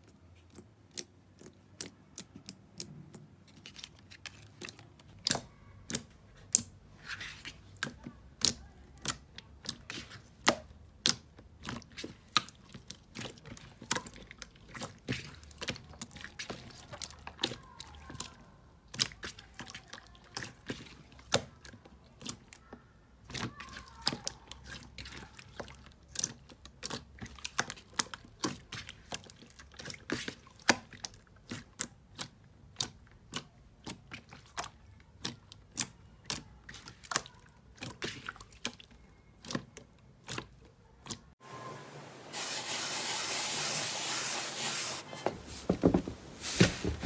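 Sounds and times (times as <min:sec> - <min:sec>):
slime squishing by hand: 0:18.9 - 0:41.3, 0:44.1 - 0:47.0.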